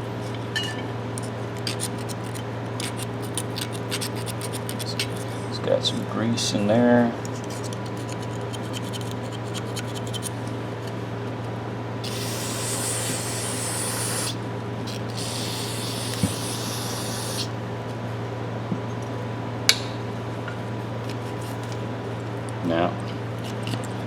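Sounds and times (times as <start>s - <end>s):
aerosol can spraying: 12.0s - 17.5s.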